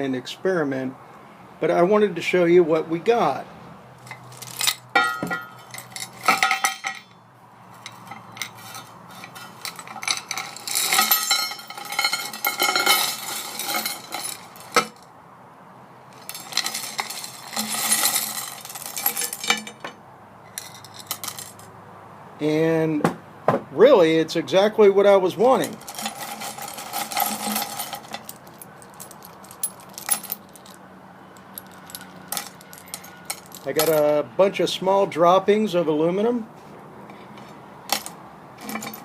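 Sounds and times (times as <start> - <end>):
metal nuggets clinking: 4.0 - 15.0, 16.2 - 21.7, 25.5 - 30.8, 31.4 - 34.1, 37.9 - 39.0.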